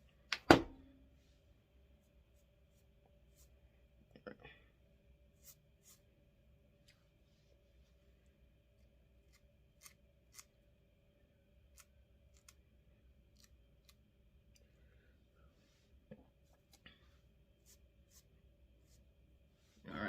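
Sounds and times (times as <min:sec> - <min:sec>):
small scissors snipping hair: 0:09.2 - 0:10.5, 0:11.7 - 0:12.6.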